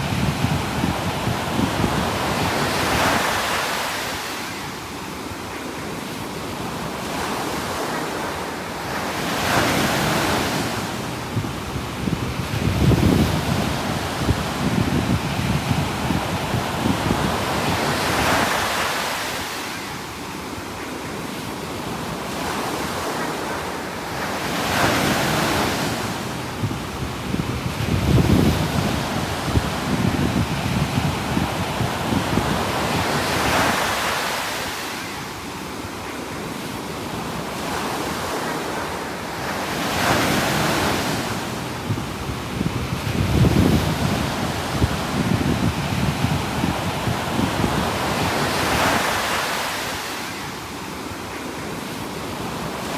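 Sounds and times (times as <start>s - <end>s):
wind on microphone: 0.0s - 5.2s, 5.8s - 35.8s, 36.5s - 52.9s
waves breaking: 0.0s - 52.9s.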